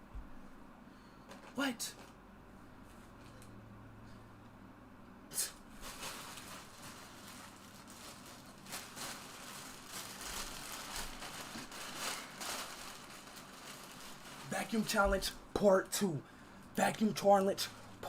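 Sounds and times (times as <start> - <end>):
rustling and handling noise: 0.2 - 4.2, 5.6 - 15.4.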